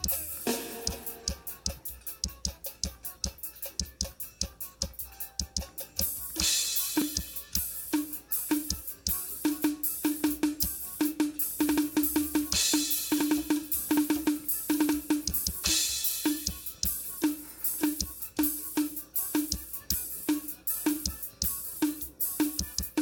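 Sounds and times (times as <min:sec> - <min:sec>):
drum kit groove: 0:00.0 - 0:23.0
cymbal crashes: 0:00.5 - 0:01.5.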